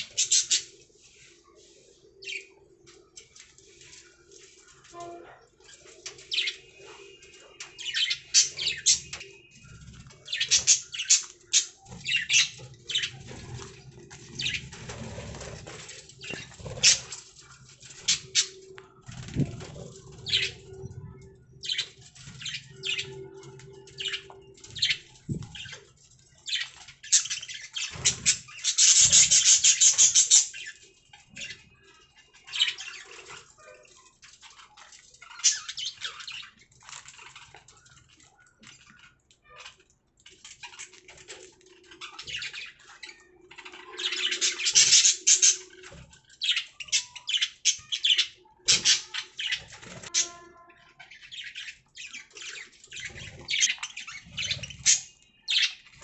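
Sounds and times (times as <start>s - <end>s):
budgerigars chirping and chattering: 0.0s - 56.0s.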